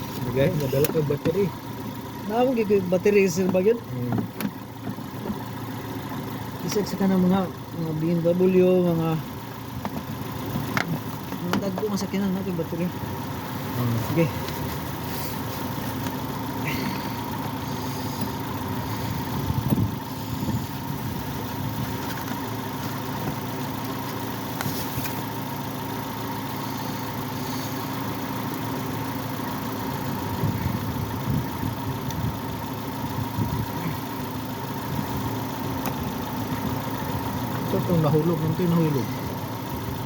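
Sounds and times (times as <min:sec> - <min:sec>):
car engine idling: 0:00.0 - 0:40.0.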